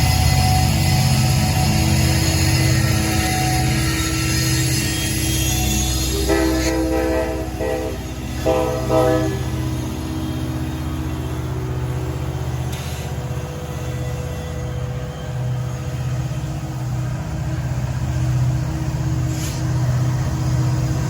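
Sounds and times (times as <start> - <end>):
train rumbling: 0.0 - 21.0
train air horn blasts: 4.0 - 10.0.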